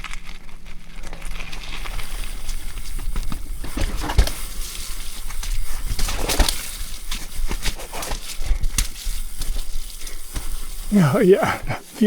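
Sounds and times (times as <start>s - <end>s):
tyres rumbling and hissing: 0.6s - 12.0s
bike knocking on roots and rocks: 1.2s - 11.9s.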